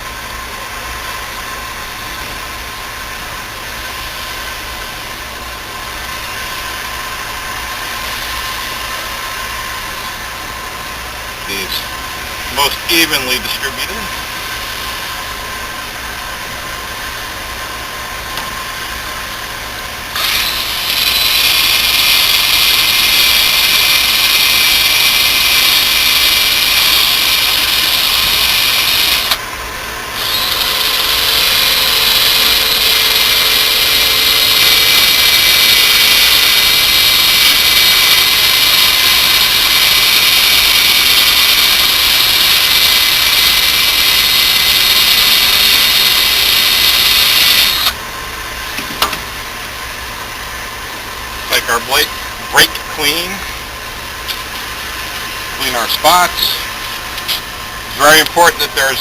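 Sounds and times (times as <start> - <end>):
steady low hum: 0.0 - 59.0
drill wire brush grinding metal: 20.1 - 29.4, 30.1 - 48.0.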